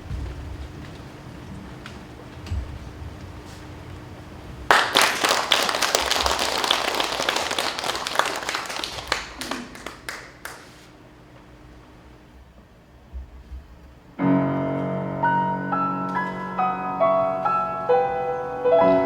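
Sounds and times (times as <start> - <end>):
audience applauding: 4.7 - 10.9.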